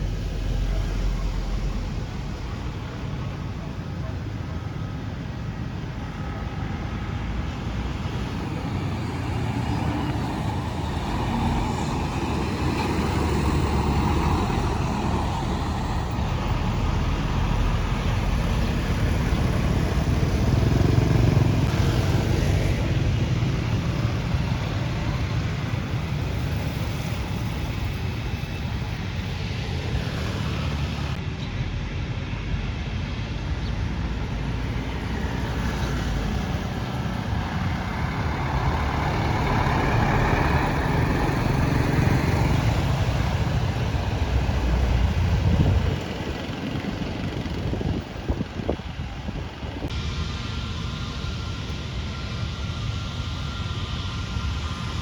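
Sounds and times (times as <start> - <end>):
road traffic noise: 0.0 - 55.0
heavy vehicle passing: 6.1 - 31.2, 33.9 - 50.2.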